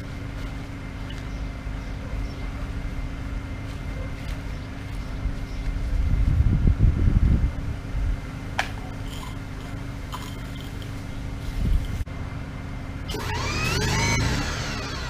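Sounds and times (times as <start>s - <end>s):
generator humming: 0.0s - 15.0s
pressure washer motor whining: 13.0s - 15.0s.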